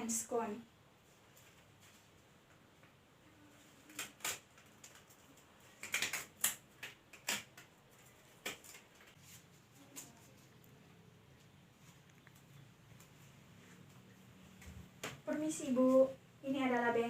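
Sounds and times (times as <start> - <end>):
gloves snapping and rustling: 3.8 - 9.2.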